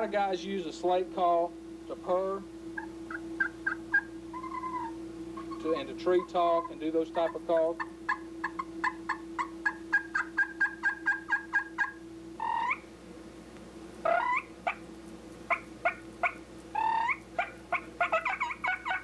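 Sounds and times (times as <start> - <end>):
steady low hum: 0.0 - 19.0
turkey call clucks and yelps: 2.8 - 12.9, 14.0 - 14.8, 15.5 - 19.0.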